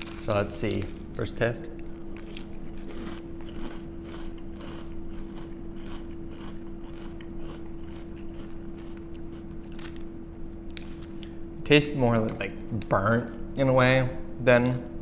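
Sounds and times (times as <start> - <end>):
person chewing crunchy cereal: 0.0 - 10.1, 10.7 - 11.3.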